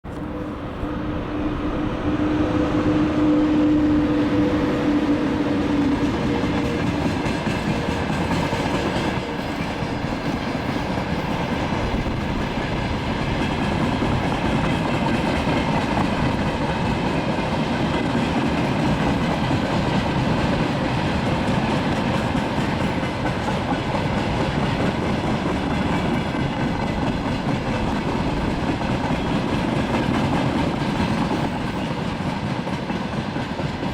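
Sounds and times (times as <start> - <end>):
freight train rumbling by: 0.0 - 33.9.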